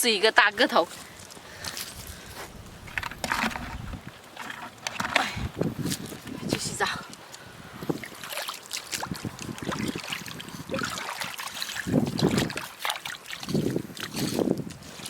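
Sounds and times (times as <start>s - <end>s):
stones clicking underfoot: 1.2s - 6.4s
wind buffeting microphone: 1.8s - 8.3s, 8.9s - 12.7s, 13.4s - 15.0s
water trickling: 2.0s - 14.6s.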